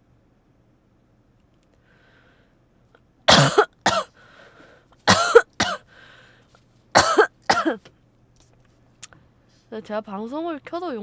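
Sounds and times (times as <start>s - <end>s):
woman coughing: 3.3s - 4.1s, 5.1s - 5.8s, 7.0s - 7.8s.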